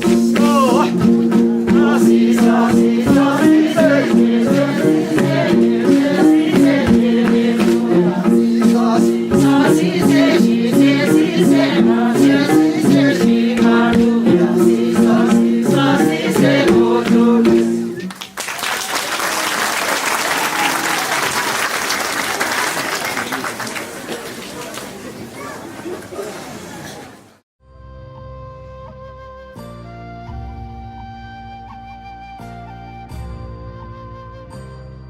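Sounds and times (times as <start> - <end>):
steady rattling beat: 0.0 - 18.0
sustained instrumental notes: 0.0 - 18.0
voices singing folk tune: 0.0 - 18.1.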